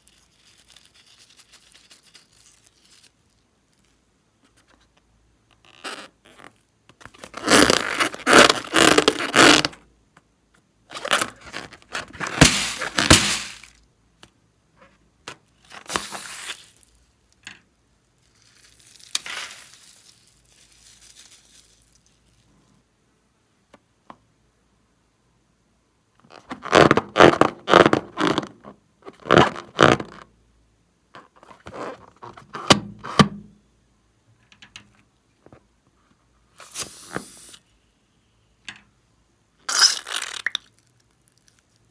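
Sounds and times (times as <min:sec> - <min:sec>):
slime being mixed by hand: 0:11.0 - 0:13.7.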